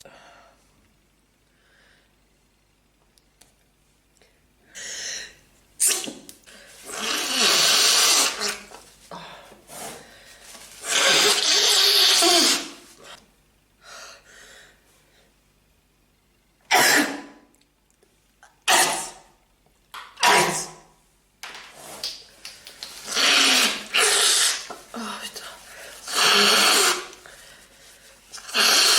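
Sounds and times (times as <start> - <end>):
person sneezing: 5.8 - 6.3, 16.7 - 17.4, 18.7 - 19.3, 20.2 - 20.9, 26.0 - 27.2
quiet breaths: 24.8 - 26.1.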